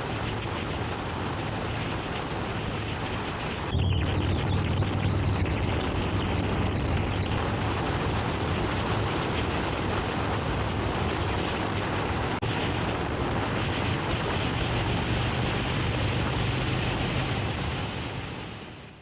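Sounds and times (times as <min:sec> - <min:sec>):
wind rush on microphone: 0:00.0 - 0:19.0
motorcycle engine humming: 0:03.7 - 0:11.9.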